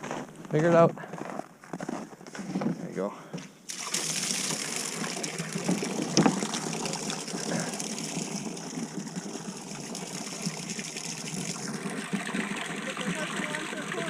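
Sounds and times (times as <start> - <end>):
water gushing: 3.7 - 14.0.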